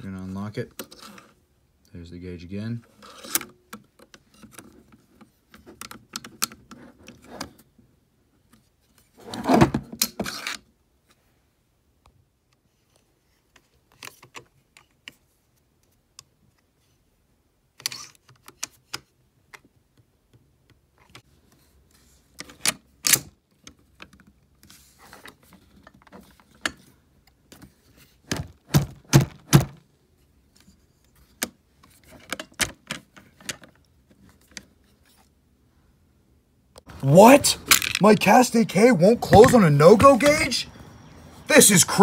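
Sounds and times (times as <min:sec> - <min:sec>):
metal clicks of gun bolt: 0:22.6 - 0:23.8.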